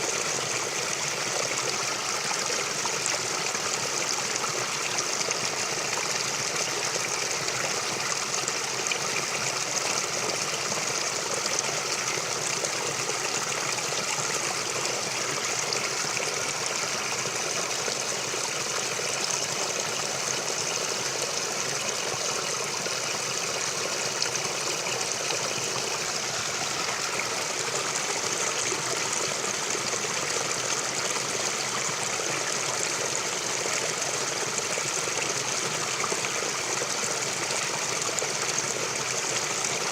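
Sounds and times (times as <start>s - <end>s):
stream water rushing and trickling: 0.0s - 39.9s.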